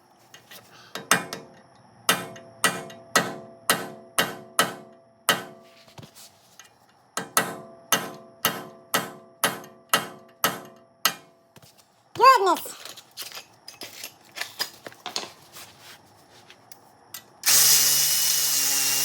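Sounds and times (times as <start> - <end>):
hammer striking metal punch: 2.1 - 5.6, 7.2 - 11.3.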